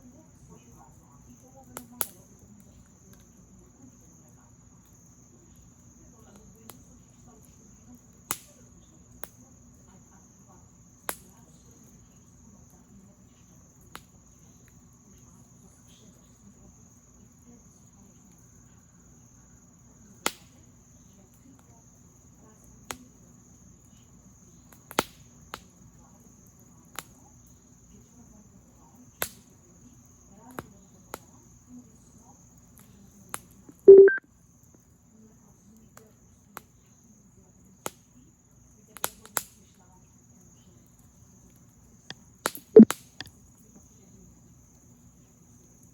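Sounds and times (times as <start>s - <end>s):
campfire crackling and popping: 1.6s - 3.4s, 4.8s - 9.4s, 24.7s - 25.7s.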